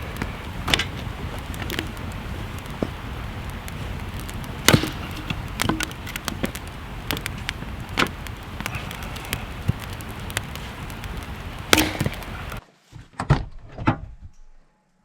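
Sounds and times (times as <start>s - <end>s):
steady background hiss: 0.0s - 12.7s
wood chopping knocks: 4.2s - 8.2s, 11.7s - 12.4s.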